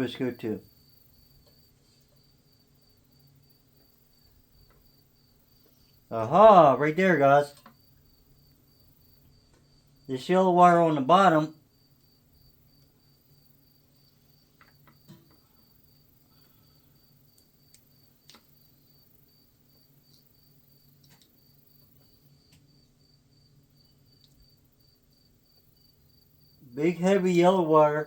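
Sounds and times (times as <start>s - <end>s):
cricket chirping: 0.0s - 28.0s
light wiring clicks: 21.0s - 21.4s.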